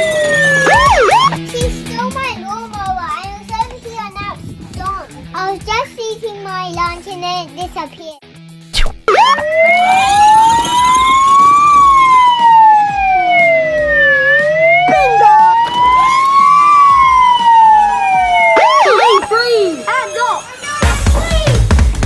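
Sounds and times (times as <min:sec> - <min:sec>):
police siren wailing: 0:00.0 - 0:01.4, 0:09.0 - 0:20.8.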